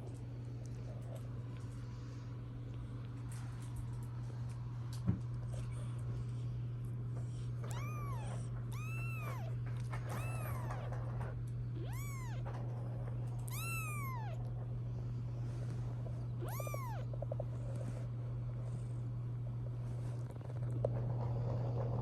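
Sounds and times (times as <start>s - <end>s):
kitten meowing: 7.6s - 11.0s, 11.8s - 12.6s, 13.4s - 14.5s, 16.4s - 17.1s.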